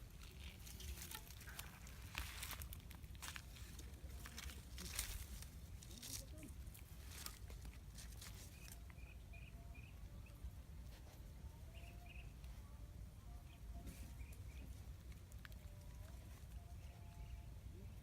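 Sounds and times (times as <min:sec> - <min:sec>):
rustling: 0:00.0 - 0:08.9
faint bird chirps: 0:08.4 - 0:10.5, 0:11.5 - 0:15.0.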